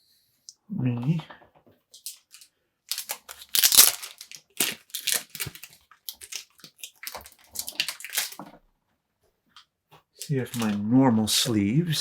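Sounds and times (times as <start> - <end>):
plastic packaging crinkling: 2.0 - 8.5, 10.2 - 10.8.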